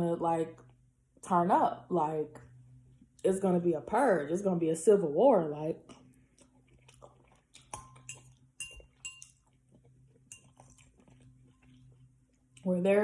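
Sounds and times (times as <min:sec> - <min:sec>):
utensil clinking against dish: 0:07.7 - 0:09.4, 0:10.3 - 0:10.7.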